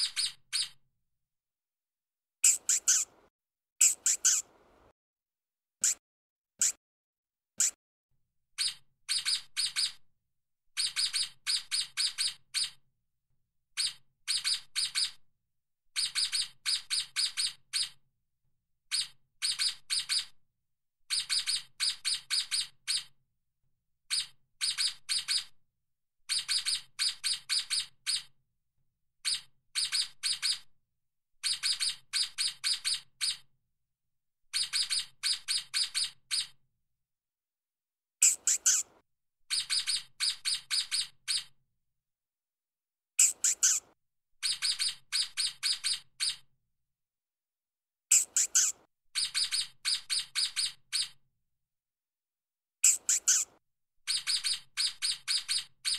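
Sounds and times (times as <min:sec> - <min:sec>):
stoat chirping: 0:02.4 - 0:03.2, 0:03.8 - 0:04.8, 0:38.2 - 0:39.0, 0:43.2 - 0:44.8, 0:48.1 - 0:49.5, 0:52.8 - 0:53.6.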